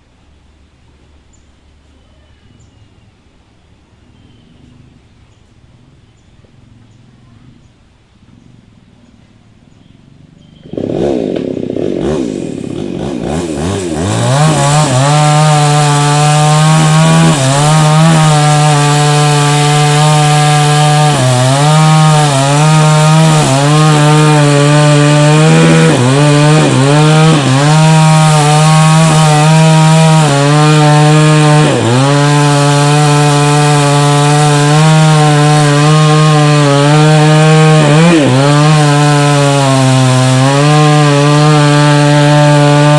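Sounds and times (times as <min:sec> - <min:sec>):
chainsaw cutting tree trunk: 0:10.6 - 0:42.9.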